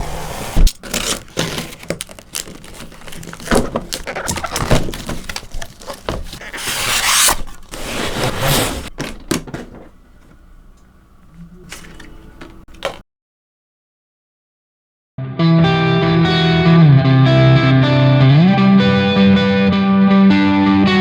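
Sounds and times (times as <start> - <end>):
packaging rustling: 0.6 - 9.3
packaging clicks and knocks: 0.7 - 9.9.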